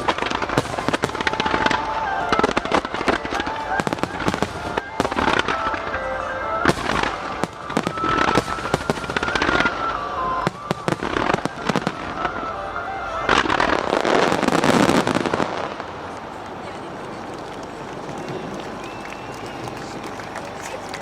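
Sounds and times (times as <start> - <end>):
melody: 0.0 - 15.4
fireworks bursts and crackles: 0.0 - 21.0.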